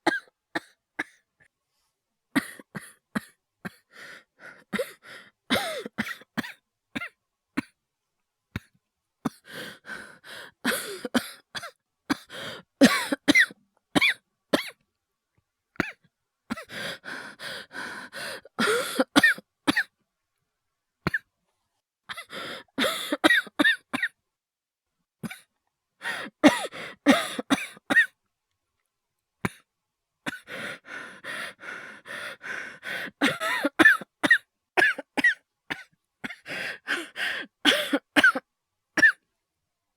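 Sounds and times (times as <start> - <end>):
man coughing: 11.6 - 13.5, 26.4 - 28.1, 37.7 - 38.4.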